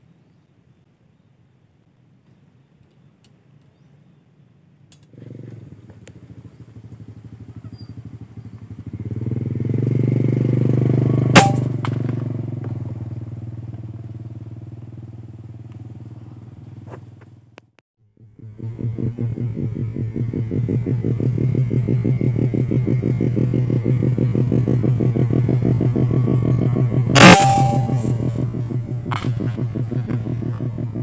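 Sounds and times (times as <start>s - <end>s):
motorcycle engine running: 5.1s - 31.0s
sharp loud crack: 11.4s - 12.1s, 27.2s - 29.4s.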